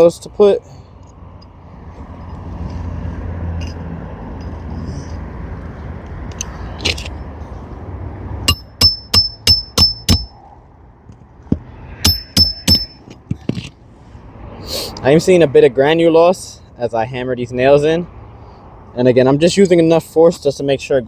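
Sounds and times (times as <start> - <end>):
hammer striking nail: 8.5 - 10.3, 12.0 - 13.0.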